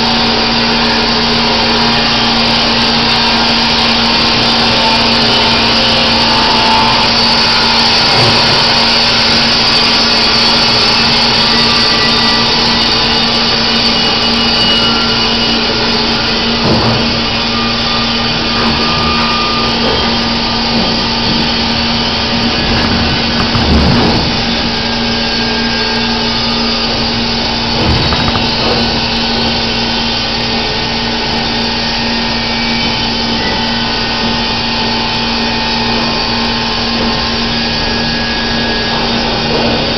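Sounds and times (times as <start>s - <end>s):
band sawmill running: 0.0s - 39.9s
lumber knocking: 22.6s - 24.6s.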